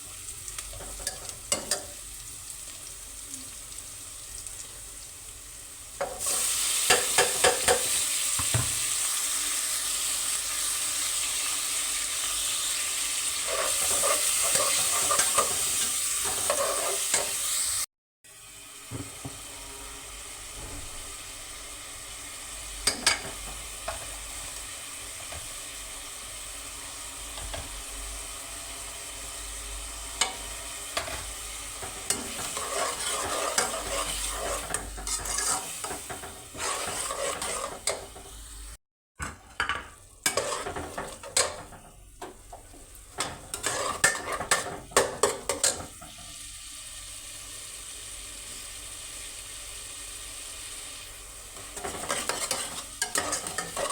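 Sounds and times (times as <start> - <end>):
vegetables sizzling in a pan: 0.0 - 53.9
spatula scraping a pan: 13.3 - 17.5, 30.2 - 38.4, 39.2 - 46.2, 51.6 - 53.9.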